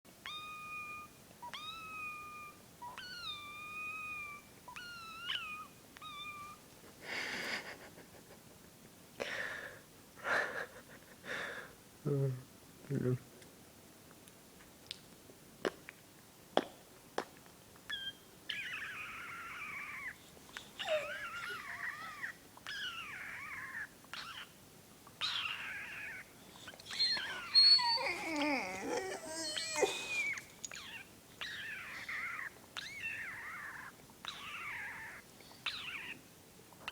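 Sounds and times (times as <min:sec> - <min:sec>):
person making squeaky animal noises: 0:17.9 - 0:24.5, 0:25.2 - 0:36.2
person making meow-like calls: 0:27.9 - 0:30.4.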